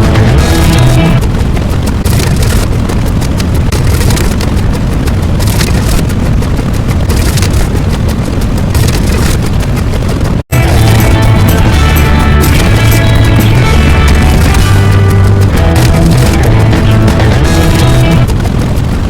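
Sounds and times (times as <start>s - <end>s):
distorted booming blast: 0.0s - 2.7s, 10.5s - 18.3s.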